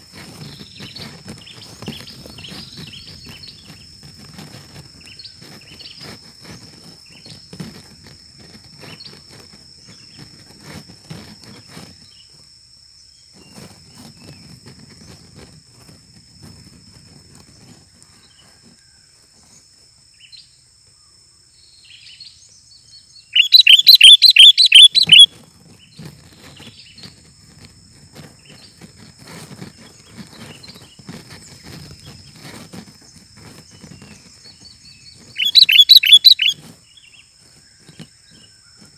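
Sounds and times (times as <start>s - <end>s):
bird chattering calls: 23.3s - 25.3s, 35.4s - 36.6s
high-pitched drone: 23.4s - 25.3s, 35.4s - 36.5s.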